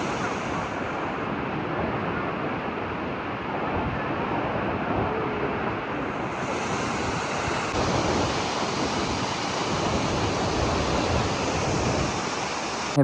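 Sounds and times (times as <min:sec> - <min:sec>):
waterfall rushing: 0:00.0 - 0:13.0.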